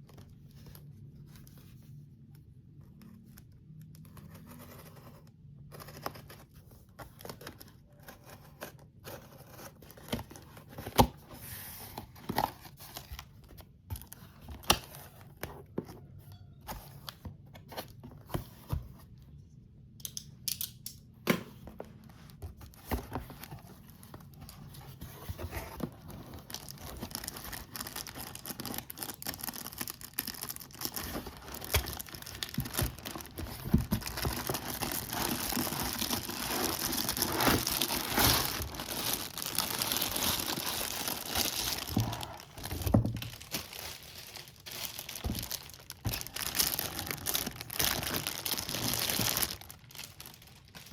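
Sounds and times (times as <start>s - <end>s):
plastic packaging crinkling and tearing: 26.0s - 50.9s.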